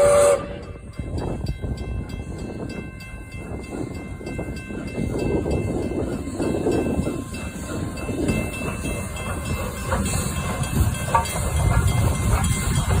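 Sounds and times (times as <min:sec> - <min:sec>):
steam hissing: 0:00.0 - 0:01.4, 0:04.7 - 0:13.0
steam train rumbling: 0:00.0 - 0:13.0.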